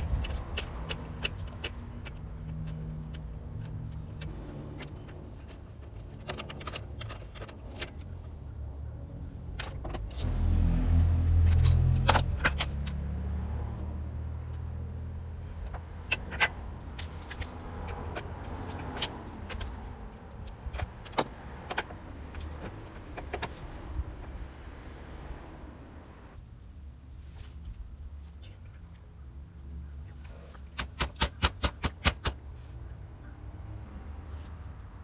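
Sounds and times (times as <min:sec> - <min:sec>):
metal tools clinking: 0:00.0 - 0:08.2, 0:09.5 - 0:10.3, 0:11.2 - 0:13.1, 0:15.4 - 0:22.6.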